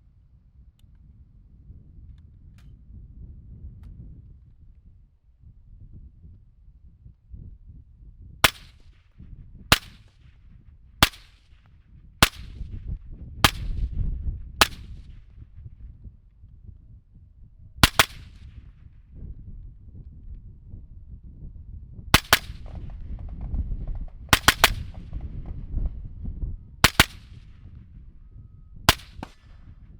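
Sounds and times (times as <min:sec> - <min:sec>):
suppressed rifle shots: 0:08.4 - 0:08.9, 0:09.7 - 0:10.2, 0:11.0 - 0:11.6, 0:12.2 - 0:12.7, 0:13.4 - 0:13.8, 0:14.6 - 0:15.2, 0:17.8 - 0:18.5, 0:22.1 - 0:26.0, 0:26.8 - 0:27.7, 0:28.9 - 0:29.8.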